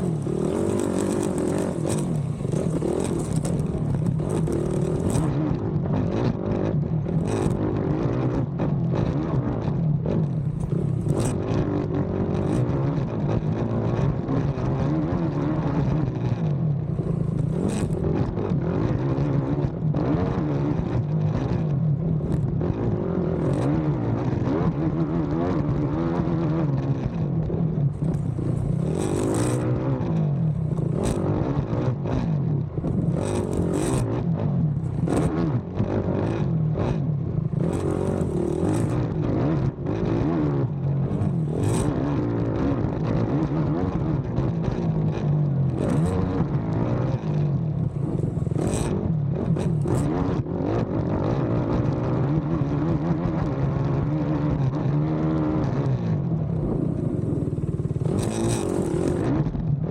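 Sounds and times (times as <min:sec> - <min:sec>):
quad engine revving: 0:00.0 - 0:05.6, 0:28.0 - 0:40.4, 0:41.0 - 0:44.0, 0:45.7 - 0:47.2, 0:47.9 - 0:50.5, 0:56.6 - 0:59.3.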